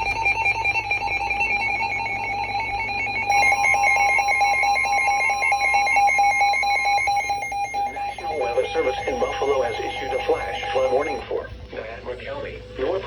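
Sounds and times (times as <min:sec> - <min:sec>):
steady higher tone: 0:00.0 - 0:11.2
harsh warbling alert tone: 0:03.3 - 0:11.2.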